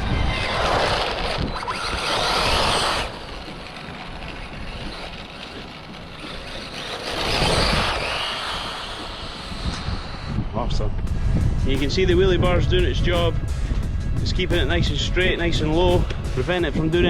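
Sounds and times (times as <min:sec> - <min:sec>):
rc car motor whine: 0:00.0 - 0:11.0.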